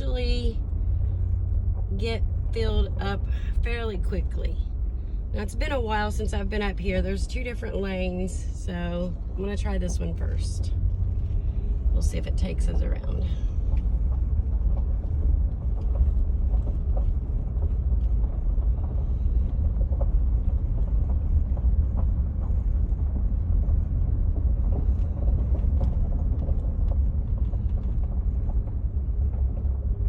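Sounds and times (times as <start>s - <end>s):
vehicle cabin rumble: 0.0s - 30.0s
faint clicks and knocks: 13.5s - 30.0s.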